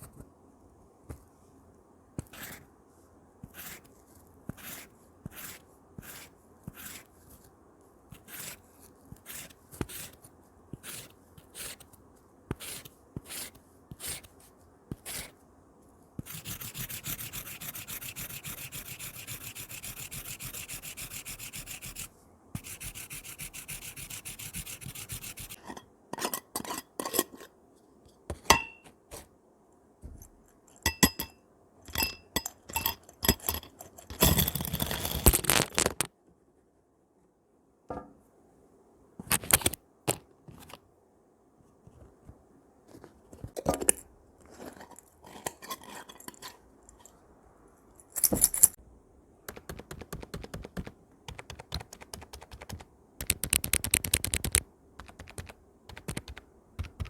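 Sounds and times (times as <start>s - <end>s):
paintbrush rubbing over surface: 16.3s - 25.6s
sharp clicks and clinks: 48.0s - 48.8s.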